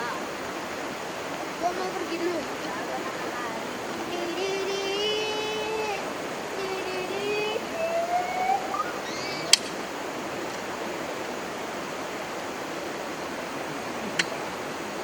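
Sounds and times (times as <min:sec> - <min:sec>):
river water rushing: 0:00.0 - 0:15.0
person speaking: 0:01.6 - 0:08.2
sharp click: 0:09.5 - 0:09.8, 0:14.2 - 0:14.4.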